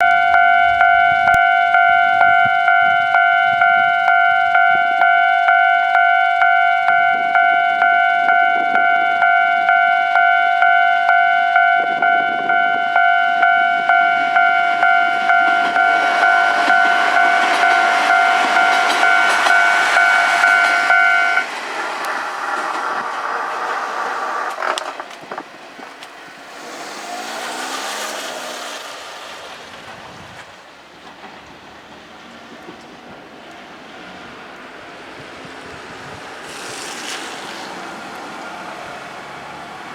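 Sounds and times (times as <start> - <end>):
level-crossing alarm dinging: 0.0 - 21.6
diesel railcar passing: 0.0 - 39.9.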